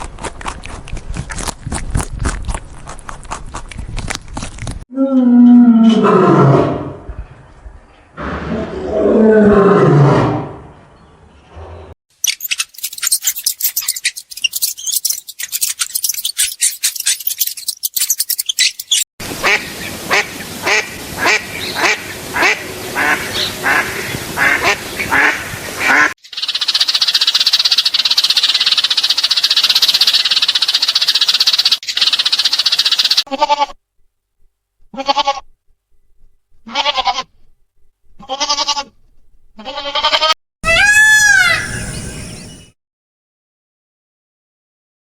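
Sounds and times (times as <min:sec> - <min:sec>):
duck quacking: 0:19.4 - 0:26.1.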